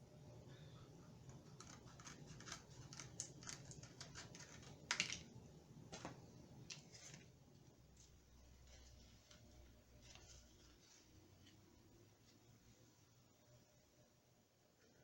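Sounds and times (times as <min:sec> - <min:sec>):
cardboard being cut by hand: 0:01.4 - 0:04.7.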